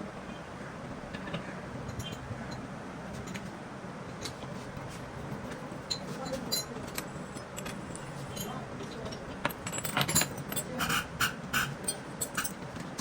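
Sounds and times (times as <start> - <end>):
low workshop hum: 0.0 - 13.0
metal parts and tools clinking: 5.8 - 13.0.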